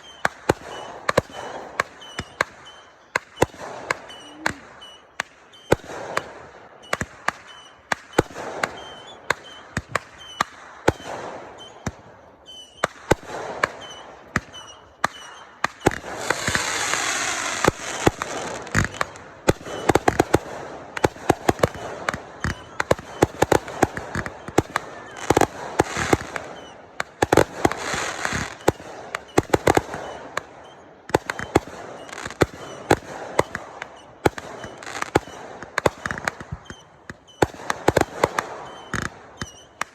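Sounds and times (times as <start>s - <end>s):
fireworks bangs and pops: 0.0s - 39.9s
fireworks crackling hiss: 12.5s - 30.6s.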